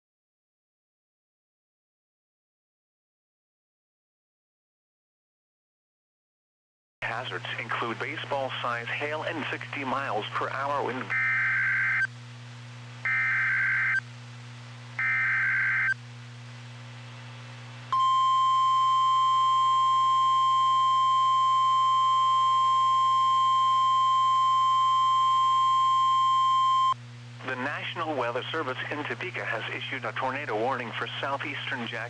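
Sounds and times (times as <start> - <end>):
steady warning alarm tone: 11.1 - 12.1, 13.1 - 14.0, 15.0 - 16.0, 17.9 - 27.0.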